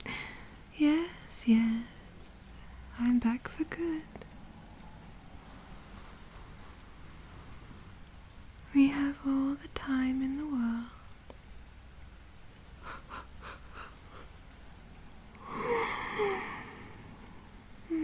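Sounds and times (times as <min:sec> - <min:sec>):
woman humming: 0:15.4 - 0:17.0
woman sighing: 0:15.4 - 0:17.1.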